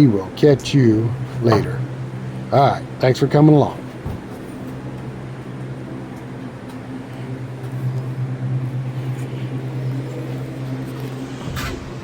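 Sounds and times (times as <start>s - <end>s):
motor hum: 0.0s - 12.0s.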